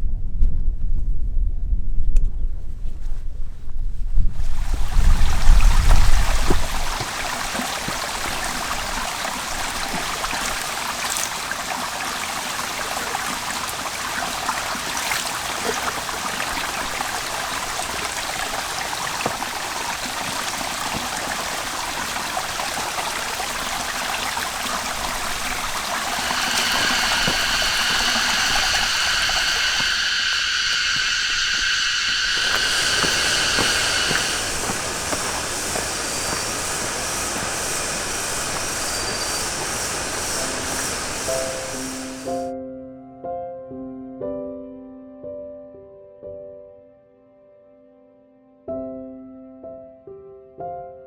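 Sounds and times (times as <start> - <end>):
wind rumble on microphone: 0.0 - 10.3, 21.0 - 42.5
flowing water: 4.4 - 42.5
steady pitched tone: 25.2 - 42.5.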